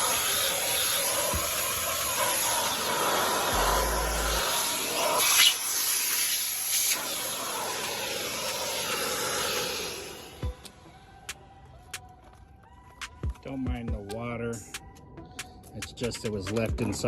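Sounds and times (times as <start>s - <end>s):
vacuum cleaner suction hiss: 0.0s - 10.6s.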